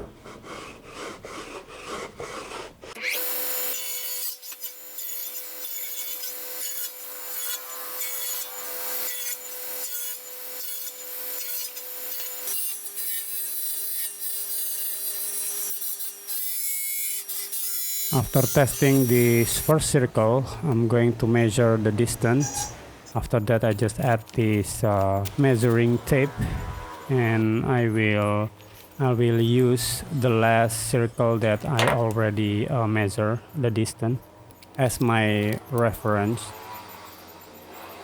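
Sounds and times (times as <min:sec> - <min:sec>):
table saw rasping wood: 0:00.0 - 0:13.4, 0:23.8 - 0:32.3
wood rubbing: 0:22.2 - 0:36.6.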